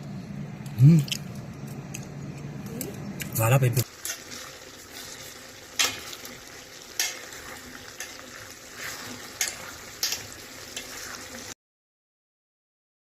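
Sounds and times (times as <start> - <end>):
sizzling hiss: 3.3 - 11.6.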